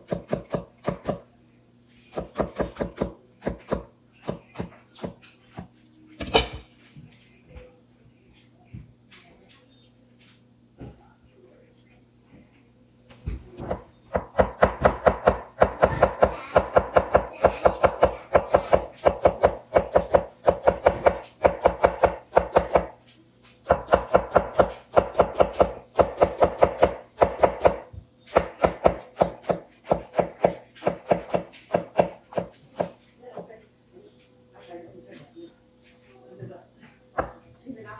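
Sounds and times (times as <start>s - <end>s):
knife chopping on cutting board: 0.0s - 1.2s, 2.2s - 6.7s, 13.6s - 23.0s, 23.6s - 33.5s, 37.2s - 37.4s.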